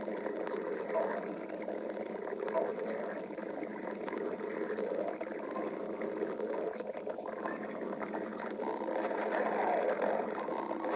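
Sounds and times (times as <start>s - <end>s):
stomach growling: 0.0s - 10.9s
faint clicks: 6.5s - 10.7s.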